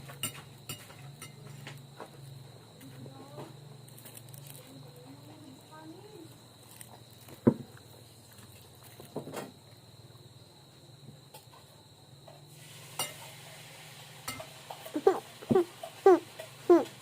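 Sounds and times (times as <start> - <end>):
spoon clinking on a plate: 0.2 - 1.4, 12.9 - 13.3, 14.2 - 14.9.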